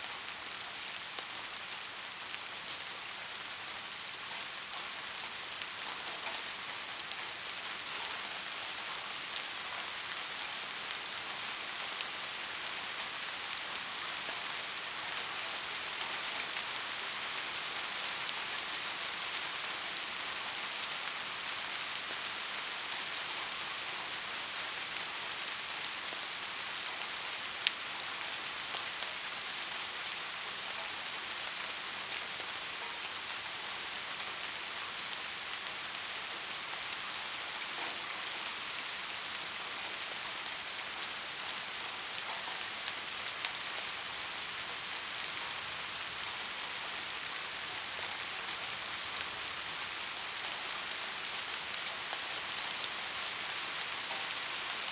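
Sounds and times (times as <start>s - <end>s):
steady rain falling: 0.0s - 54.9s.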